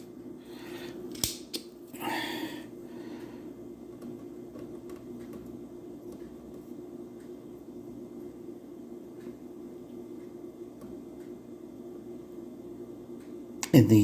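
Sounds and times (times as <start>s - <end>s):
desoldering tool clicks: 1.1s - 1.7s.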